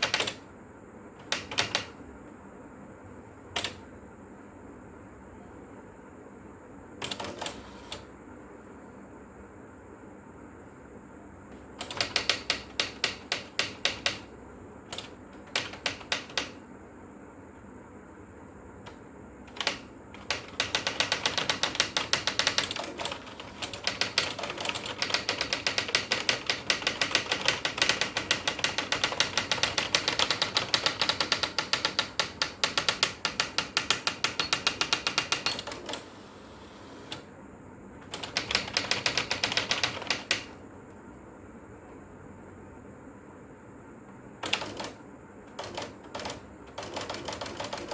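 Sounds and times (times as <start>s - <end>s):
electric typewriter typing: 0.0s - 0.5s, 1.2s - 2.0s, 3.5s - 3.9s, 7.0s - 8.1s, 11.5s - 16.6s, 18.8s - 37.3s, 38.0s - 40.6s, 44.4s - 47.9s.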